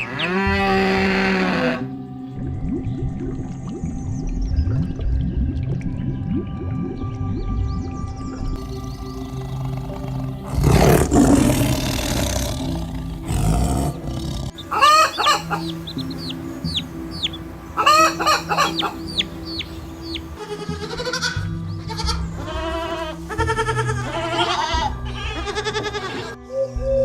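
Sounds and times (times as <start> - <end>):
chickens calling: 0.0 - 0.5, 14.5 - 26.4
background music: 0.0 - 27.0.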